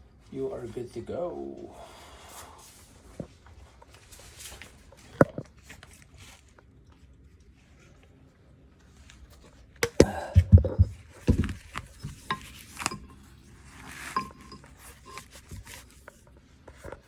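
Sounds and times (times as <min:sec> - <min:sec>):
knocks and thumps: 0:09.8 - 0:13.0
metal tools clinking: 0:09.9 - 0:16.2.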